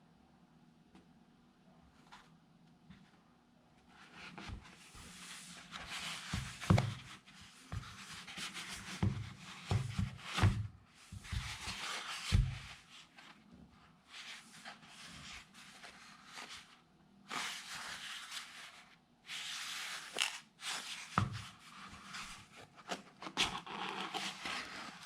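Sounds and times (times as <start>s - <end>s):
packaging rustling and scraping: 21.9s - 25.0s.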